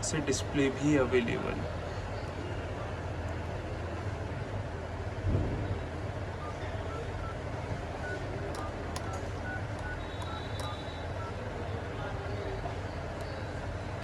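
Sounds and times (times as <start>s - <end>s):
low rumble of background noise: 0.0s - 14.0s
faint short beeps: 8.0s - 11.4s
sharp clicks: 8.5s - 10.8s.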